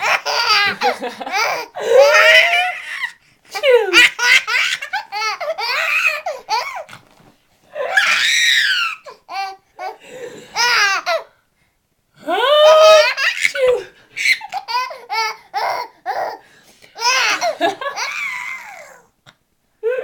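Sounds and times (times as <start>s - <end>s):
baby laughing: 0.0s - 6.9s, 7.8s - 10.0s, 10.6s - 11.3s, 12.8s - 16.4s, 17.0s - 19.1s.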